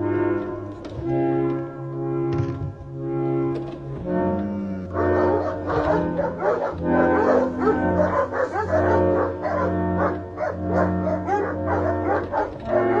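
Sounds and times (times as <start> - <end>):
music with low held notes: 0.0 - 13.0
dog yipping and whimpering: 5.4 - 12.5.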